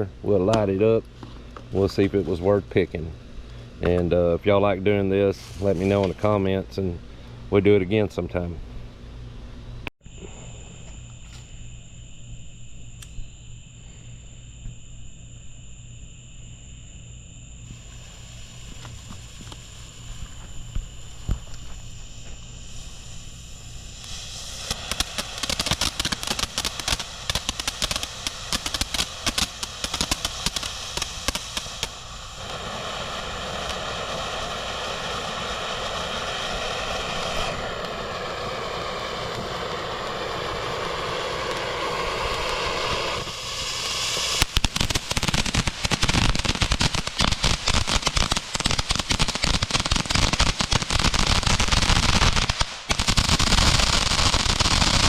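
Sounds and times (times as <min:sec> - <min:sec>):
firework crackling: 0:05.0 - 0:06.4, 0:17.7 - 0:55.0
firework spraying hiss: 0:05.2 - 0:06.4, 0:17.7 - 0:55.0.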